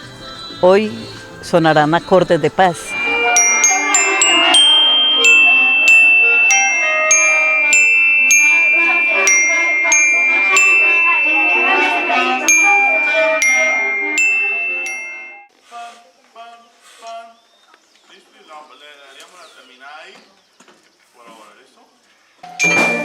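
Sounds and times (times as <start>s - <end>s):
glockenspiel melody: 0.0s - 15.5s, 22.6s - 23.0s
soft musical accompaniment: 0.0s - 15.5s, 22.6s - 23.0s.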